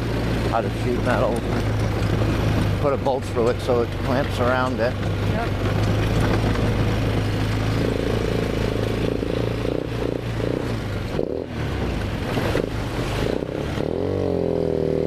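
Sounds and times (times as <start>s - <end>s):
knocks and clatter from bumps: 0.0s - 9.3s
atv engine running: 0.0s - 15.0s.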